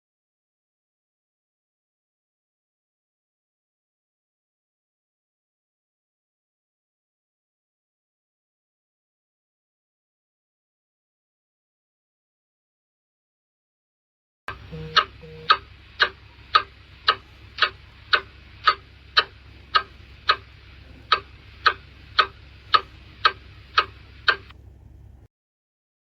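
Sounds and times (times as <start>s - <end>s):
clock ticking: 14.5s - 24.6s
faint low hum: 14.5s - 25.3s.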